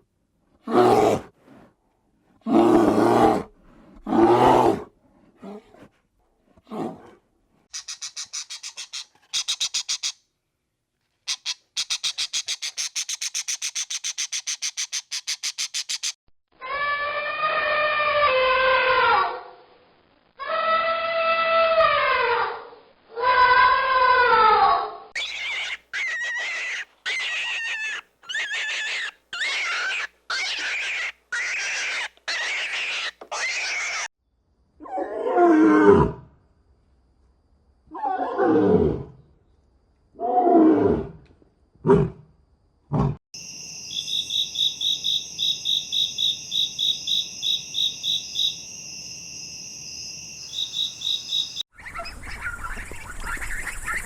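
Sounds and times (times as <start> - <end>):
animal chattering call: 7.8 - 10.2, 11.3 - 16.2, 25.2 - 34.1
farm animal crying: 23.2 - 34.1.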